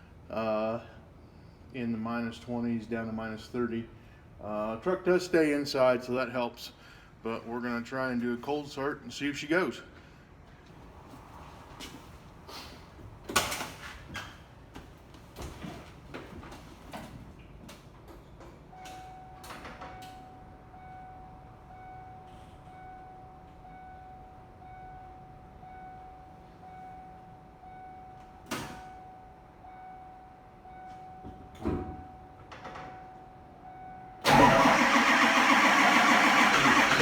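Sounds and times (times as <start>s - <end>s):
diesel engine starting and running: 34.2s - 37.0s.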